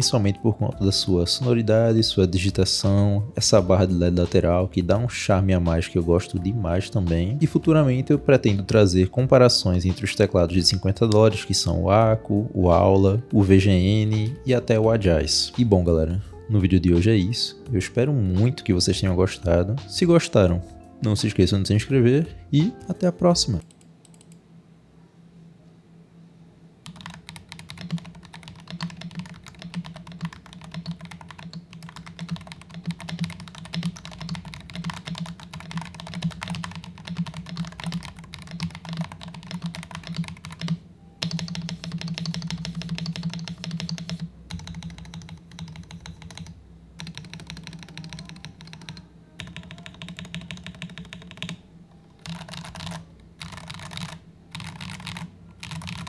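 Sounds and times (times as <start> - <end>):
mechanical keyboard typing: 26.8 - 56.0.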